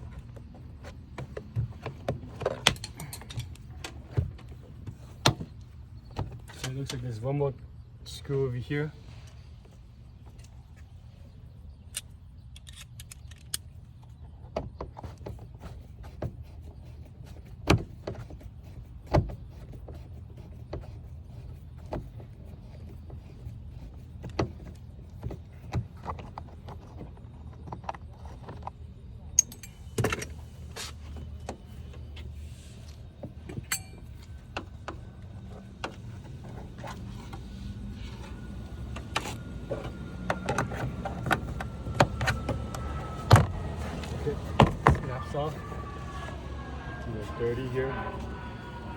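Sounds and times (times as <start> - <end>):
low background hum: 0.0 - 48.9
hand tools clicking and rattling: 2.3 - 4.0.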